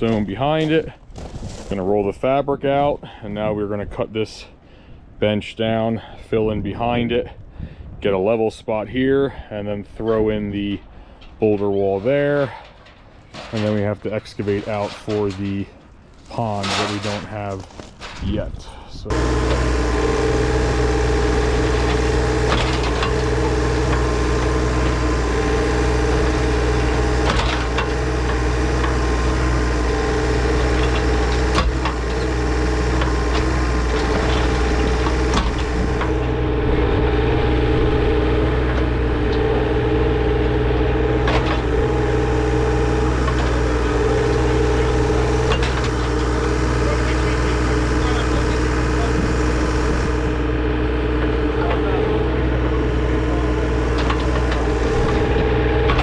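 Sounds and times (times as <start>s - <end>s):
sharp knocks and scrapes: 11.6s - 18.4s, 43.0s - 46.4s
earthmoving machine engine running: 19.1s - 56.0s.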